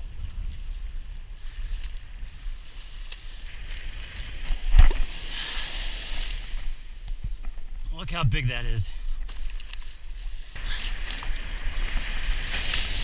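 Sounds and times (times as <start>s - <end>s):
wind rumbling on microphone: 0.0s - 13.0s
surf washing on beach: 2.1s - 7.0s, 10.3s - 13.0s.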